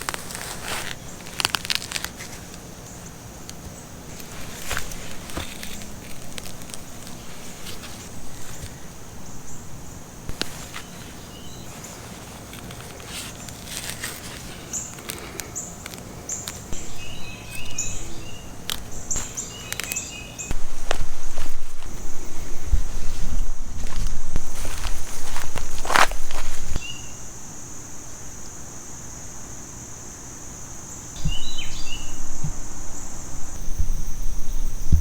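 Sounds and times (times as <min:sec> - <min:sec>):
clicks and rustles: 0:00.0 - 0:26.8.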